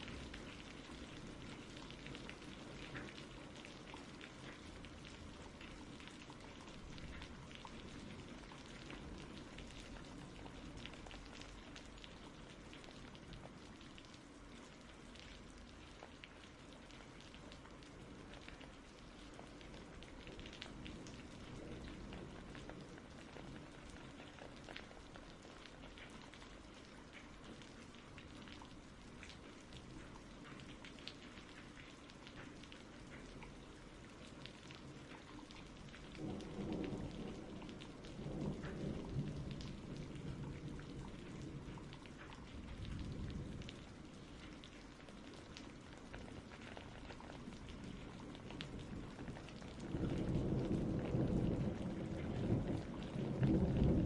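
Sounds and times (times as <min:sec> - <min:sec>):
steady rain falling: 0:00.0 - 0:54.0
distant thunder rumbling: 0:36.1 - 0:41.8, 0:47.9 - 0:54.0.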